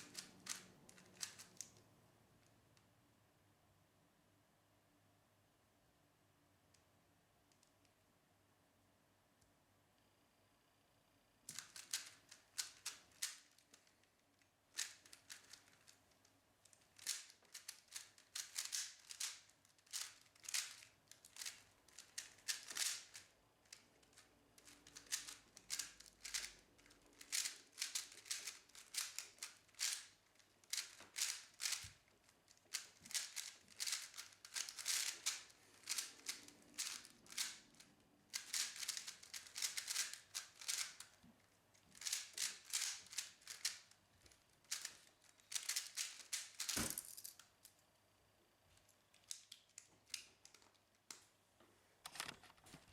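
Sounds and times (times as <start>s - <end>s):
puzzle cube plastic clicks: 0.0s - 1.9s, 11.5s - 41.2s, 41.8s - 47.5s, 49.1s - 51.2s.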